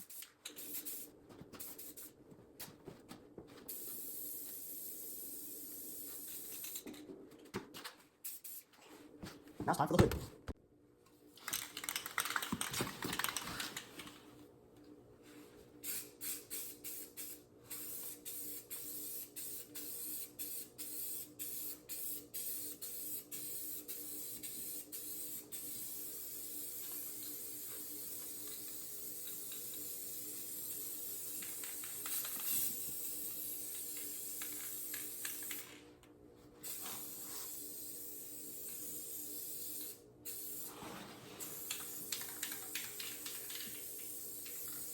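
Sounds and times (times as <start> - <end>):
spray paint hissing: 0.0 - 2.1, 3.7 - 6.8, 8.2 - 8.7, 15.8 - 35.6, 36.6 - 40.7, 41.4 - 44.9.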